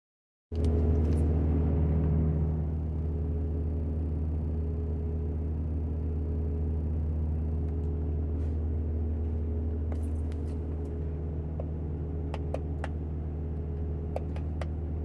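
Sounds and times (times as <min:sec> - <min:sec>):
steady low hum: 0:00.6 - 0:15.0.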